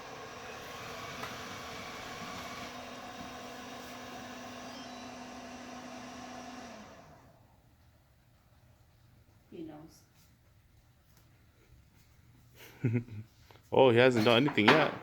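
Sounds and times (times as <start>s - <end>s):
robot vacuum humming: 0.0s - 7.4s.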